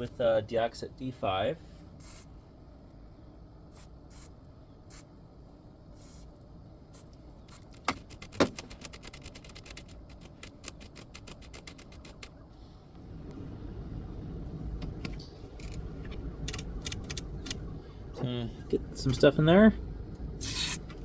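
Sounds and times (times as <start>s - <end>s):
aerosol spray hissing: 2.0s - 2.3s
sharp clicks: 7.1s - 12.4s, 14.8s - 17.7s.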